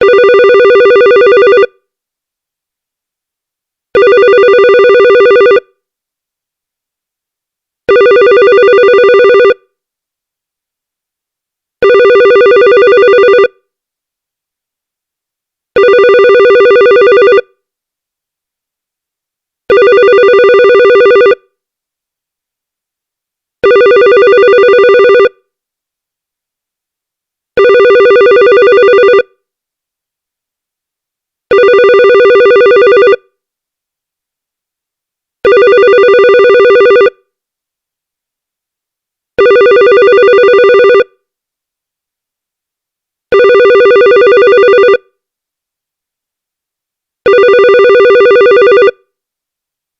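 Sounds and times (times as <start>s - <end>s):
electronic telephone ringer: 0.0s - 1.7s, 4.0s - 5.6s, 7.9s - 9.6s, 11.8s - 13.5s, 23.6s - 25.3s, 27.6s - 29.3s, 31.6s - 33.2s, 35.5s - 37.2s, 39.4s - 41.1s, 43.3s - 45.0s, 47.3s - 49.0s.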